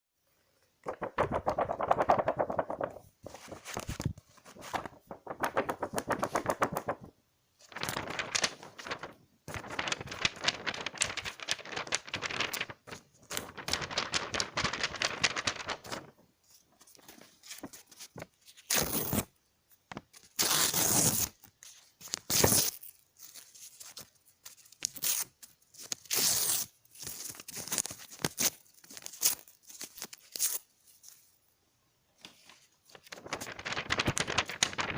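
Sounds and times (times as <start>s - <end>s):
paper tearing: 18.7s - 19.3s, 20.3s - 21.4s.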